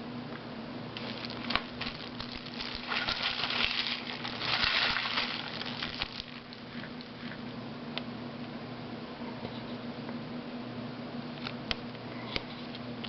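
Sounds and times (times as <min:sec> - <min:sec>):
steady low hum: 0:00.0 - 0:13.0
plastic wrapper crinkling: 0:01.0 - 0:07.1.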